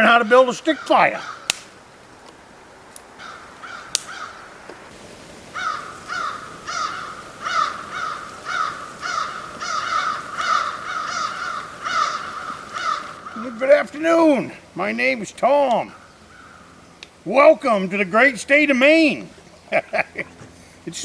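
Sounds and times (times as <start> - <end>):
crow cawing: 0.7 - 1.5, 3.2 - 4.5, 5.5 - 13.6, 15.9 - 16.8
sharp clicks: 1.5 - 1.7, 3.9 - 4.2.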